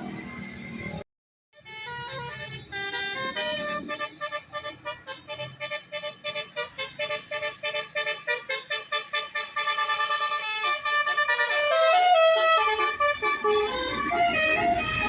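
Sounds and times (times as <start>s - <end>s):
multi-tone musical air horn: 1.6s - 15.0s
low engine rumble: 10.7s - 15.0s.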